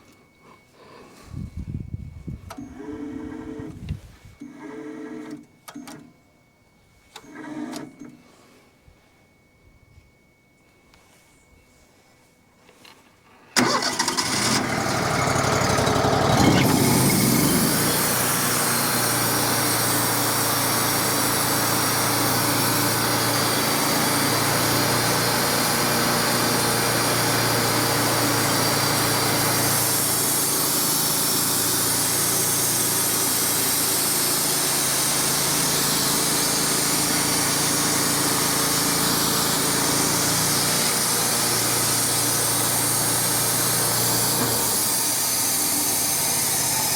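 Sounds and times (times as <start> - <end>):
sawmill engine starting and running: 13.6 - 46.9.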